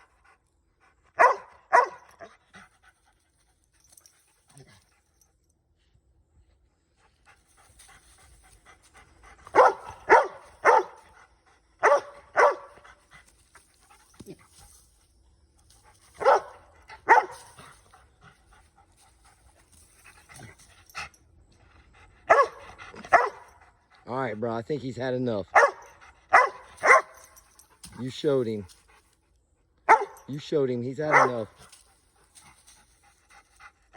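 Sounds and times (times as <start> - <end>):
dog barking: 1.2 - 2.3, 9.5 - 11.0, 11.8 - 12.8, 16.2 - 17.4, 22.3 - 23.5, 25.5 - 27.2, 29.9 - 30.3, 31.1 - 31.5
dog panting: 31.1 - 33.9.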